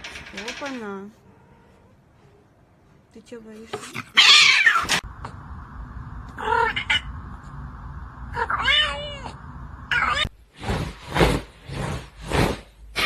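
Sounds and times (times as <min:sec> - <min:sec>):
cat meowing: 0:04.0 - 0:05.0.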